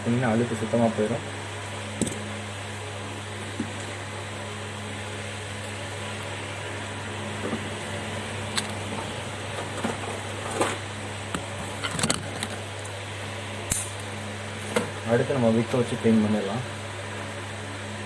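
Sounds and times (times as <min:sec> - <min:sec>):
low mechanical hum: 0:00.0 - 0:18.0
hand tool clicking and scraping: 0:05.6 - 0:06.4, 0:07.7 - 0:13.0, 0:13.7 - 0:14.8.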